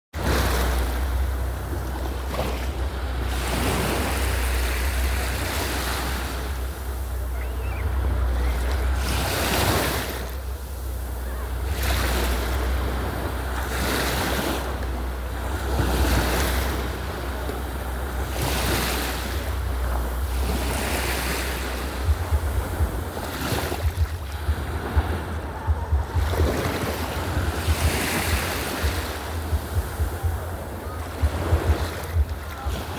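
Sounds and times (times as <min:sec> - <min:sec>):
wind rumbling on microphone: 0:00.1 - 0:32.9
ocean waves washing in: 0:00.2 - 0:32.9.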